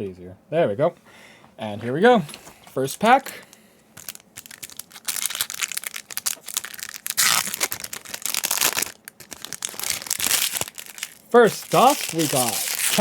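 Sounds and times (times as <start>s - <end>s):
foil pack tearing and crinkling: 4.0s - 13.0s.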